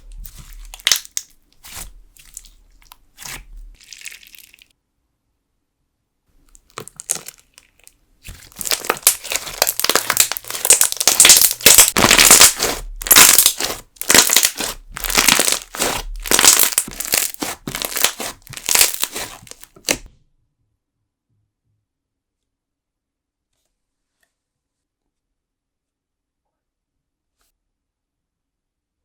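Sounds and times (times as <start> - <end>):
slime crackling and popping: 0.0 - 4.6, 6.5 - 20.1
slime squishing: 0.0 - 4.7, 6.5 - 20.1.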